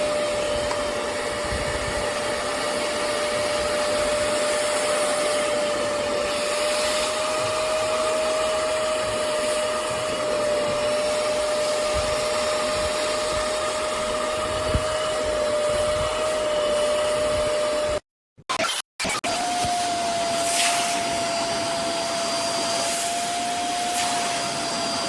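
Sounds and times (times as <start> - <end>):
spot cleaner motor whine: 0.0 - 18.0, 19.3 - 25.0
suction hiss: 20.3 - 21.2.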